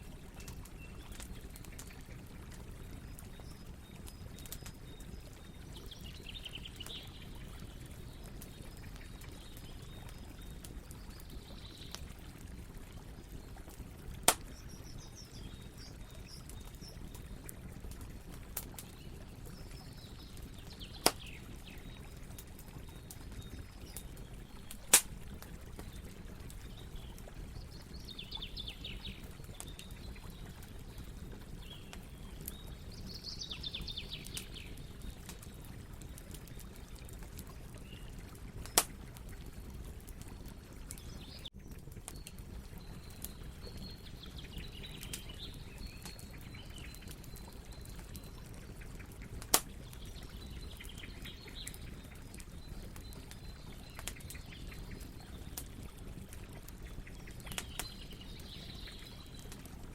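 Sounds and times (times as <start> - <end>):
campfire crackling: 0.0 - 59.9
loud sharp pops: 24.9 - 25.1.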